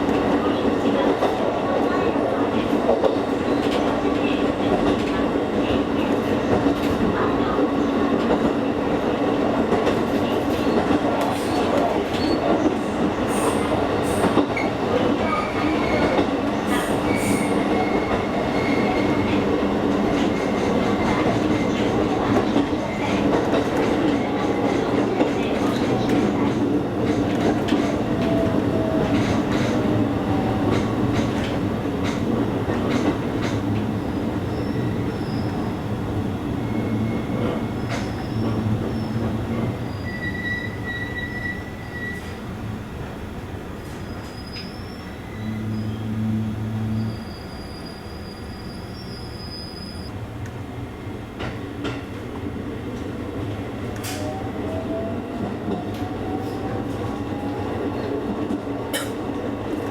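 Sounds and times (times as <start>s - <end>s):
electric train on rails: 0.0s - 59.9s
rail-joint clicks: 13.3s - 34.0s, 36.7s - 42.4s, 53.9s - 54.4s, 58.3s - 59.9s
high brake squeals: 34.5s - 35.6s, 39.9s - 42.4s, 44.0s - 46.1s, 46.8s - 50.1s.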